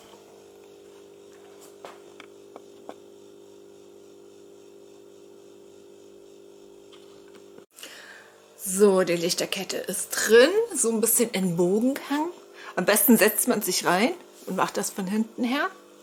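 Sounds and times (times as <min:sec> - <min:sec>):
faint electrical hum: 0:00.0 - 0:16.0.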